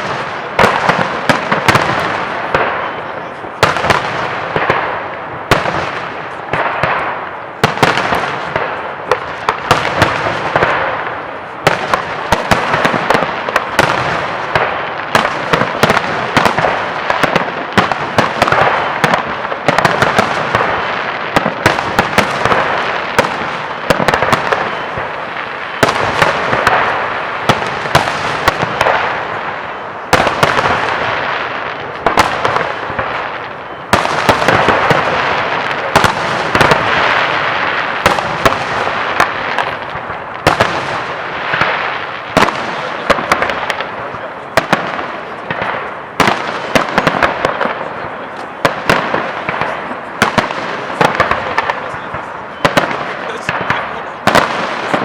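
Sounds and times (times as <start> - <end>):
fireworks crackling: 0.0 - 55.0.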